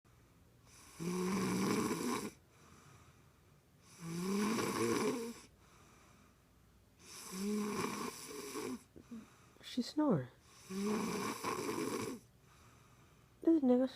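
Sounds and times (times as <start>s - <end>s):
woman snoring: 0.8s - 2.4s, 3.9s - 5.5s, 7.0s - 9.3s, 10.5s - 12.3s.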